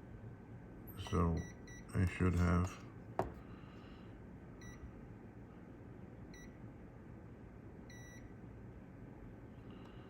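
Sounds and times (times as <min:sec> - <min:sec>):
multimeter beeps: 0:01.0 - 0:01.9, 0:07.9 - 0:08.2.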